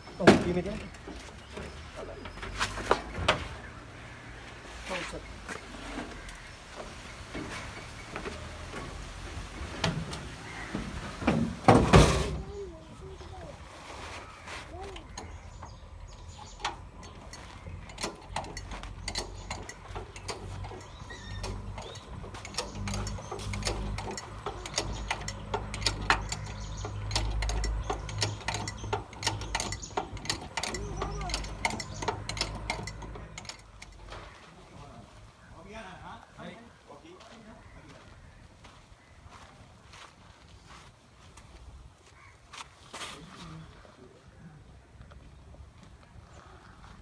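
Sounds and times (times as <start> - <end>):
clattering of moving parts: 5.6 - 12.6, 14.0 - 34.4.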